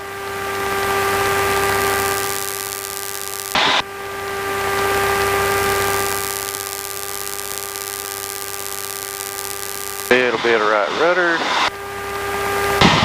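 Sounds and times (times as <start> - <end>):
aircraft engine and propeller droning: 0.0 - 6.4, 10.1 - 13.0
loud burst of static: 0.7 - 11.8, 12.4 - 13.0
headset intercom hiss: 1.4 - 3.8, 5.3 - 11.7.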